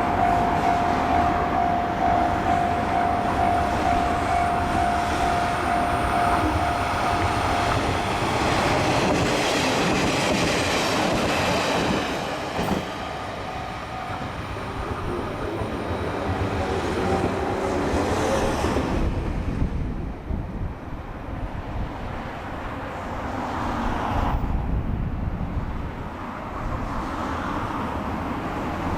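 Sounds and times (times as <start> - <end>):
level crossing warning bell: 0.0 - 8.4
train wheels clacking on rails: 0.0 - 13.2.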